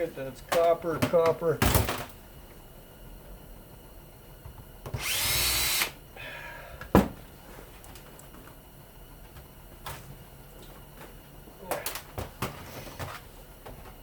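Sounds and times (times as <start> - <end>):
cordless power drill spinning up: 5.0 - 6.0.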